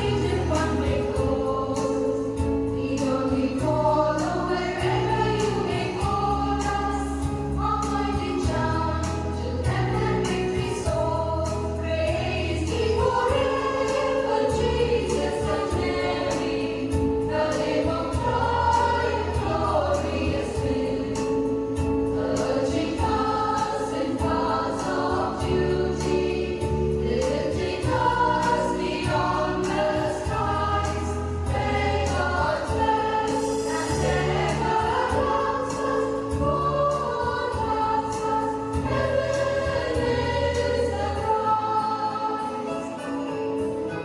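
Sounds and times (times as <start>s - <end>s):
choir singing a hymn: 0.0s - 44.0s
instrumental accompaniment: 11.8s - 44.0s.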